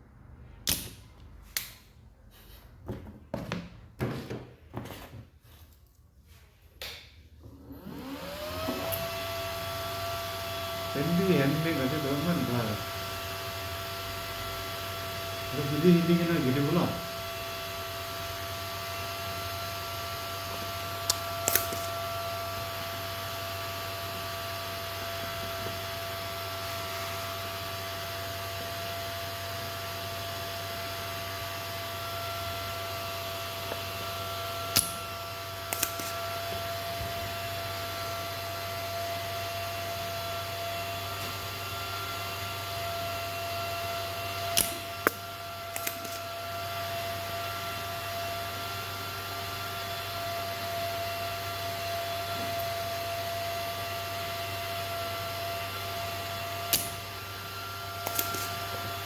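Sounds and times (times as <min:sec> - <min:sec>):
electrical hum and whine: 0:07.4 - 0:59.0.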